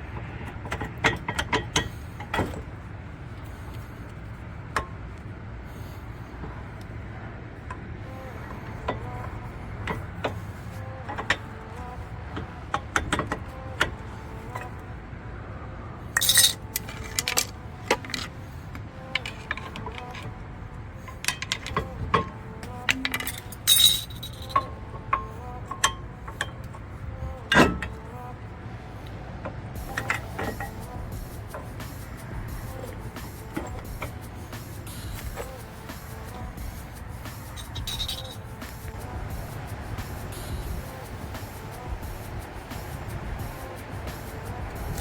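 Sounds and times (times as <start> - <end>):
metal tools clinking and knocking: 16.2 - 18.3, 19.1 - 20.3, 21.0 - 26.7, 29.8 - 31.7, 37.4 - 38.9
sharp metallic rattles: 16.2 - 18.4, 21.0 - 26.6, 29.8 - 45.0.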